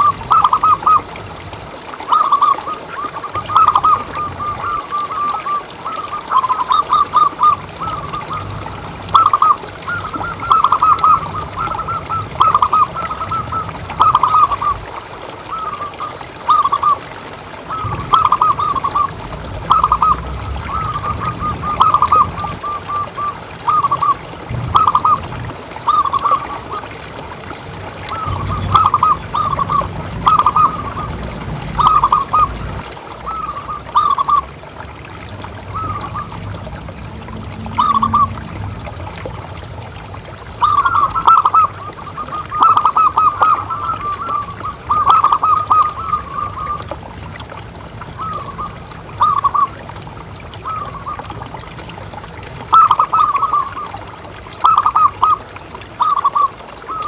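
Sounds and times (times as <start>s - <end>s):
low background rumble: 6.1s - 53.9s
dove cooing: 17.7s - 25.3s, 28.1s - 34.5s, 37.6s - 38.5s.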